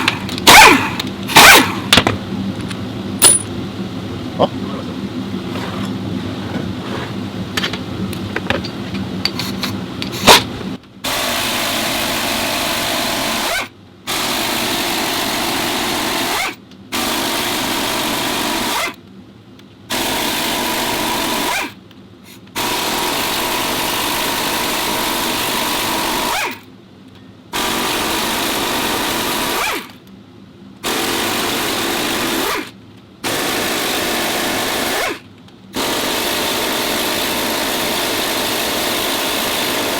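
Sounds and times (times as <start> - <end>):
power tool running: 0.0 - 2.0, 11.1 - 19.0, 19.9 - 21.7, 22.6 - 26.6, 27.6 - 29.9, 30.8 - 35.2, 35.8 - 39.9.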